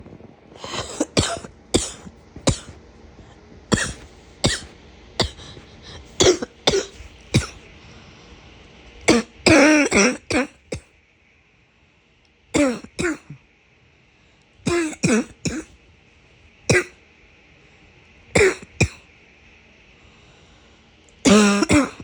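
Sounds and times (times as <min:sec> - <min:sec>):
person coughing harshly: 0:00.6 - 0:02.8, 0:03.7 - 0:07.6, 0:09.1 - 0:10.8, 0:12.6 - 0:13.4, 0:14.7 - 0:15.8, 0:16.7 - 0:17.0, 0:18.4 - 0:19.0, 0:21.2 - 0:22.0.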